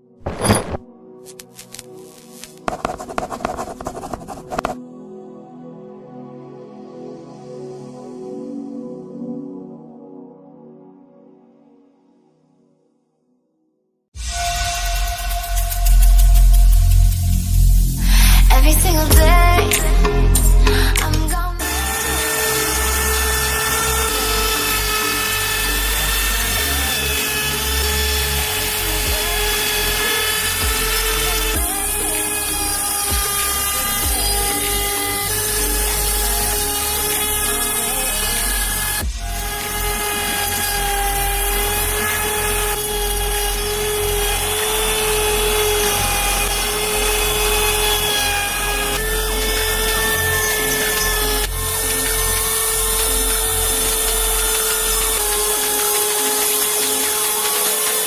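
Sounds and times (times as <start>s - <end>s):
router cutting plywood: 1.3s - 4.8s, 19.7s - 58.0s
router spindle high whine: 19.5s - 58.0s.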